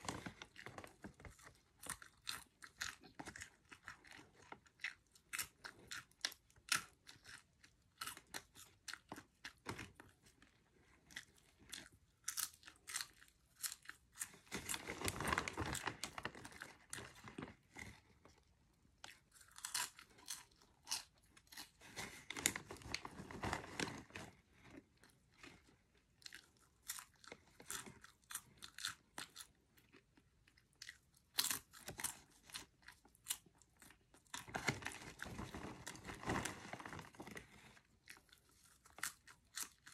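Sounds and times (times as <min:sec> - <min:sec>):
popcorn crunching: 0:00.0 - 0:24.1, 0:25.0 - 0:39.9.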